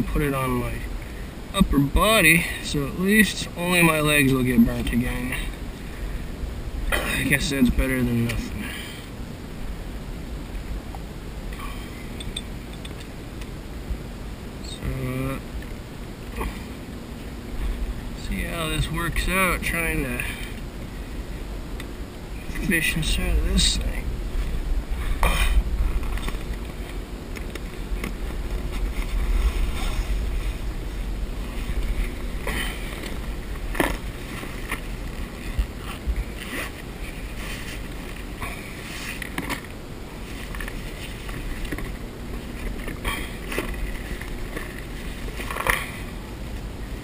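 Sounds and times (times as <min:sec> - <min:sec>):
wind rumble on microphone: 0:23.2 - 0:32.5.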